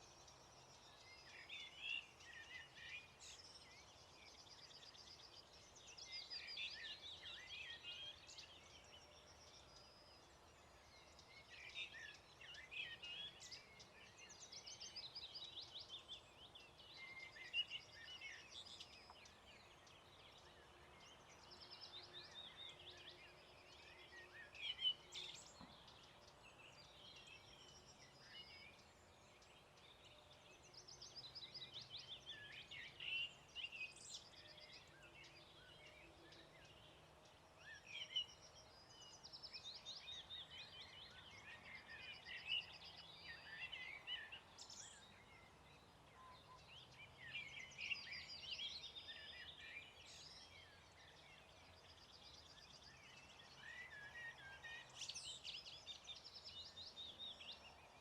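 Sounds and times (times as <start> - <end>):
songbirds singing: 0.0 - 58.0.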